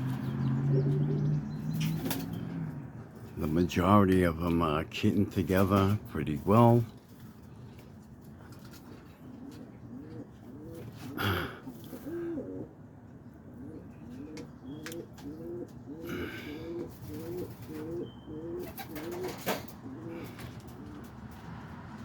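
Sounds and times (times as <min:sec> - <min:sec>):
pigeon cooing: 0:00.0 - 0:02.8, 0:08.7 - 0:21.5.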